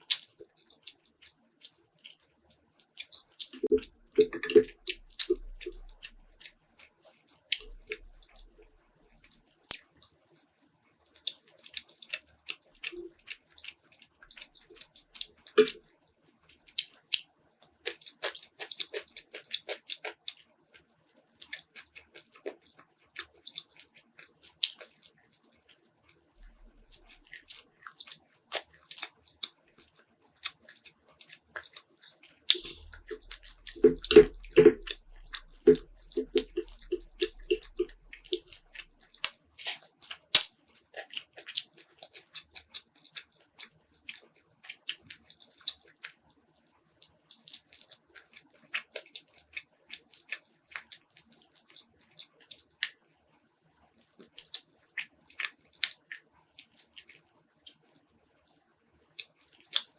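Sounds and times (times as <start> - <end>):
person chewing food: 0.0 - 2.2, 3.0 - 15.9, 16.5 - 17.2, 17.8 - 25.8, 26.4 - 53.3, 53.9 - 58.1, 59.1 - 59.9
wet mouth clicks: 3.0 - 6.5, 7.5 - 8.7, 12.8 - 13.2, 14.4 - 15.8, 32.5 - 41.7.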